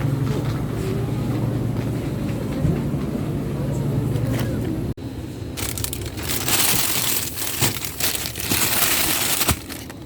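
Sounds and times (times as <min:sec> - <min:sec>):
plastic crinkling and rustling: 0:05.6 - 0:10.0.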